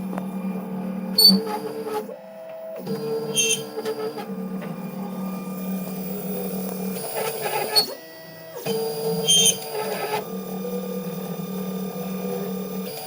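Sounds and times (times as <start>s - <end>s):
printer motors whirring: 0.0s - 13.0s
high-pitched squeaks: 3.3s - 3.9s, 9.2s - 9.6s.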